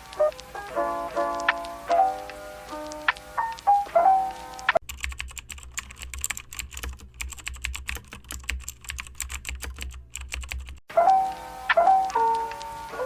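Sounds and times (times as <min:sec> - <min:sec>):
background music: 0:00.0 - 0:04.8, 0:10.9 - 0:13.0
typing on a keyboard: 0:00.0 - 0:13.0.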